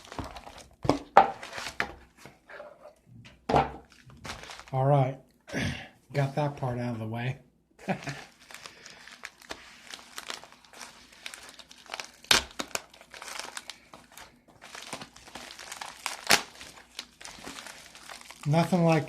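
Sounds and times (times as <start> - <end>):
packaging crinkling: 0.0 - 1.9, 3.8 - 4.8, 7.8 - 19.0.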